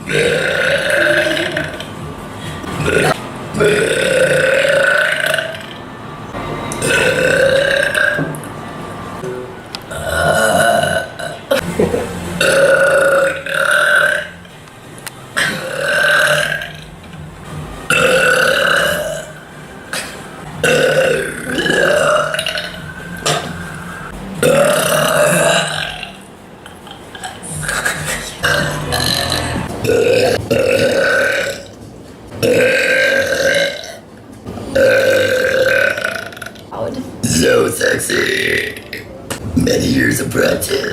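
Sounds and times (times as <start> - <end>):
woman burping loudly: 0.0 - 1.9, 2.7 - 5.6, 6.8 - 8.3, 9.9 - 11.7, 12.4 - 14.3, 15.4 - 16.8, 17.9 - 23.5, 24.4 - 26.2, 28.4 - 31.7, 32.4 - 34.0, 34.7 - 36.7.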